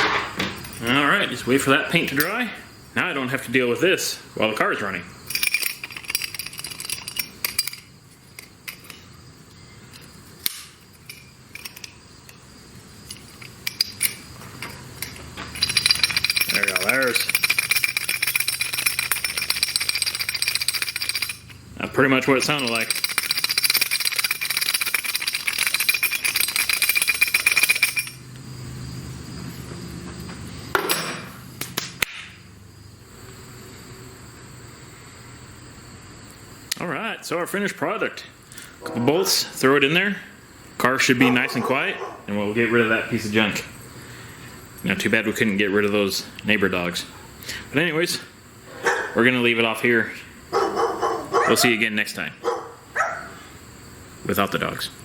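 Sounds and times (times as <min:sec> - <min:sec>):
metal piece rattling: 0:05.2 - 0:09.1, 0:09.9 - 0:12.4, 0:13.0 - 0:21.6, 0:22.2 - 0:28.2.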